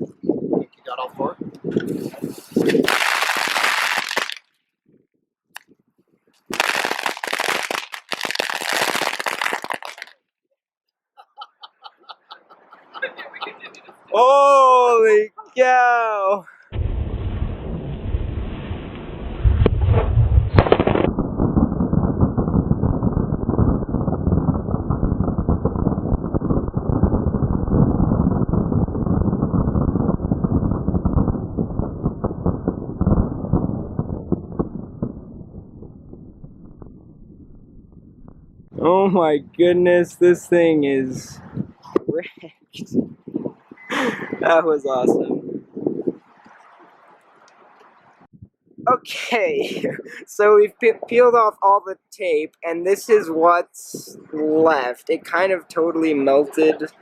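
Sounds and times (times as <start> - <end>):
fireworks hissing and crackling: 1.8 - 4.5, 6.4 - 10.2, 16.7 - 35.1
faint firework pops: 18.9 - 21.6.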